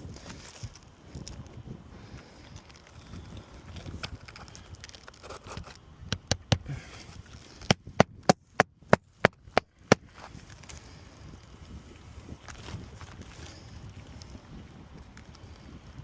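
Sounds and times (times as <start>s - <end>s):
hammer driving nails into shingles: 6.1s - 6.7s.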